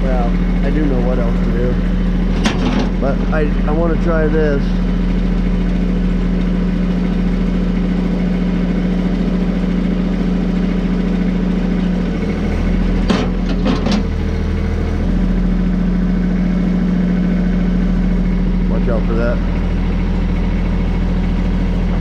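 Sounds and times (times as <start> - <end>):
engine idling: 0.0 - 22.0.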